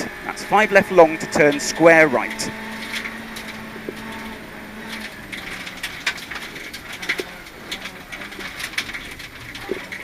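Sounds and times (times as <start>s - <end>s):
low engine hum: 0.0s - 10.0s.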